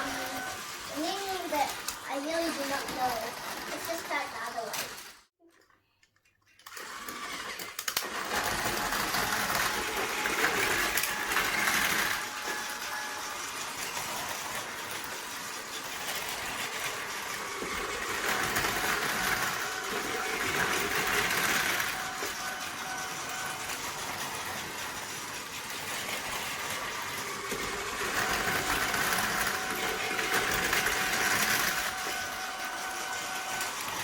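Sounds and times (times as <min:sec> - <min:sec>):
wheels rattling on plastic track: 0:00.0 - 0:05.7, 0:06.4 - 0:34.0
toy train motor whirring: 0:00.0 - 0:34.0.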